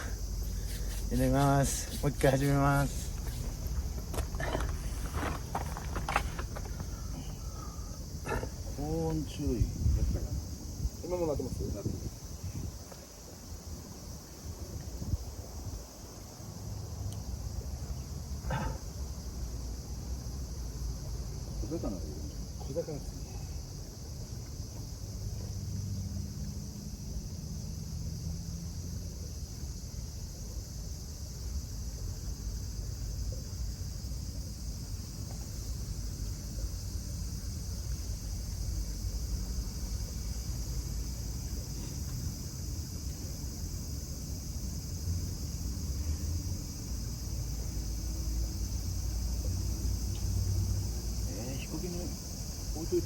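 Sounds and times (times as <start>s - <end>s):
insects buzzing: 0.0s - 53.0s
wind rumble on microphone: 9.1s - 16.2s.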